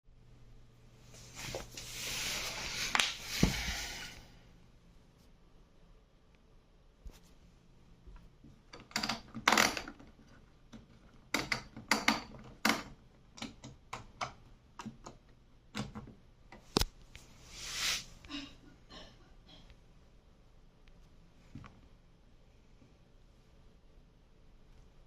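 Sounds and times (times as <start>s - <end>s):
clicks and knocks of handling: 8.6s - 16.9s
brief hiss: 17.5s - 18.2s.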